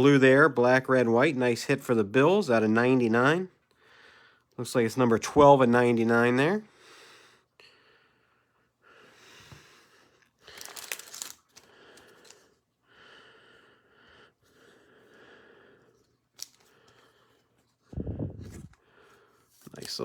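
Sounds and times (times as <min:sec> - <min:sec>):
plastic sleeve rustling and crinkling: 0:10.4 - 0:12.4, 0:16.3 - 0:16.7, 0:19.4 - 0:20.0.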